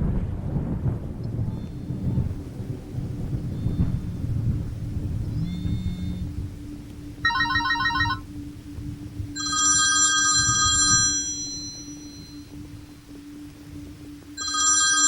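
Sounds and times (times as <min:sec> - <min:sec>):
low rumble: 0:00.0 - 0:14.5
low steady hum: 0:00.0 - 0:15.0
telephone ringing: 0:07.2 - 0:08.2, 0:09.4 - 0:12.2, 0:14.4 - 0:15.0.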